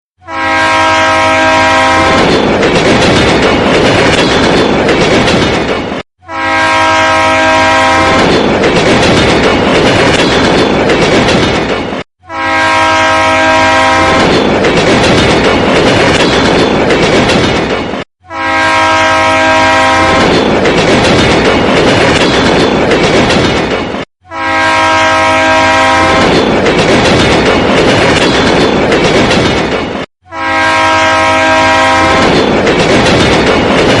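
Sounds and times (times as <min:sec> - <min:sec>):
train horn blaring: 0:00.2 - 0:02.4, 0:06.2 - 0:08.4, 0:12.2 - 0:14.4, 0:18.2 - 0:20.4, 0:24.2 - 0:26.4, 0:30.2 - 0:32.4
train rumble and clickety-clack: 0:00.3 - 0:34.0.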